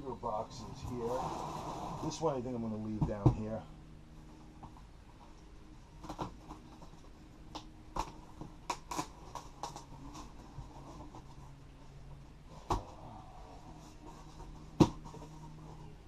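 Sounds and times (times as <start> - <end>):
cardboard boxes being handled: 13.6 - 16.0.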